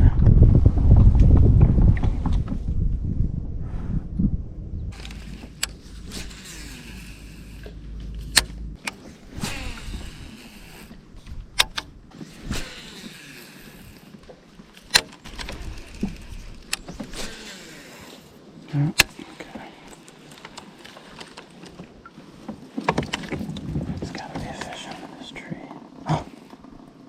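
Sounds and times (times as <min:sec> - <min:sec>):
fishing reel clicks: 0:05.0 - 0:14.0, 0:14.8 - 0:18.3
fishing reel whirring: 0:05.0 - 0:14.2, 0:14.8 - 0:21.7.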